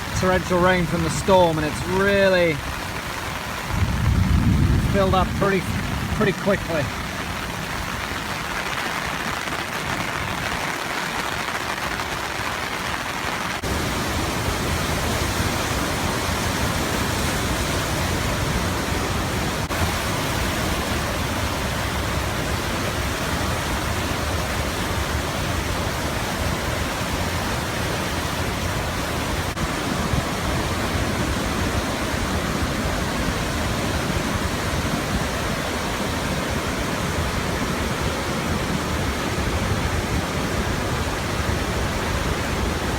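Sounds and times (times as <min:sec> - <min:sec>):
floodwater rushing through channel: 0:00.0 - 0:42.9.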